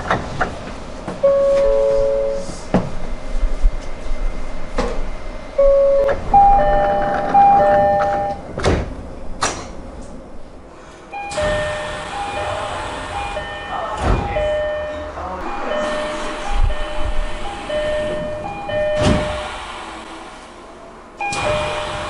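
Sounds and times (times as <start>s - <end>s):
train carriage noise: 0.0s - 22.0s
train door chime: 1.2s - 2.7s, 5.6s - 8.5s, 11.1s - 19.6s, 21.2s - 22.0s.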